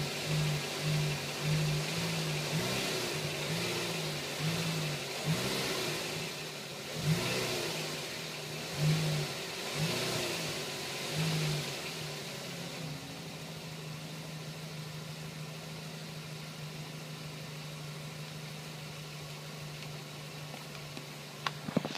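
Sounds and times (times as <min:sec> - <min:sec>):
car engine revving: 0:00.0 - 0:16.9
car engine idling: 0:00.0 - 0:21.9.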